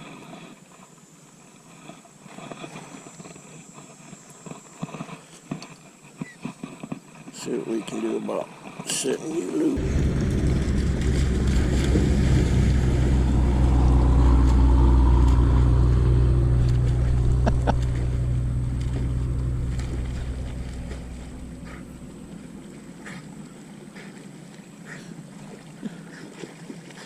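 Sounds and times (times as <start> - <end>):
engine running: 9.8 - 25.6.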